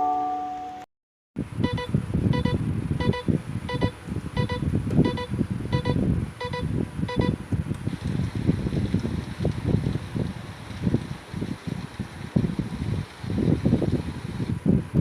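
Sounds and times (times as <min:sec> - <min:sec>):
low rumbling noise: 0:01.4 - 0:15.0
electronic alarm double beeps: 0:01.6 - 0:07.4.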